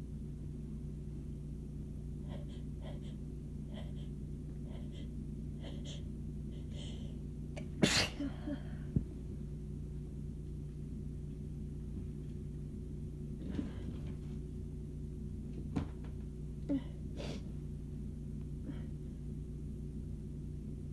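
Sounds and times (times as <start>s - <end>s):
steady low hum: 0.0s - 20.9s
catching breaths: 2.2s - 7.3s
person sneezing: 7.6s - 8.7s.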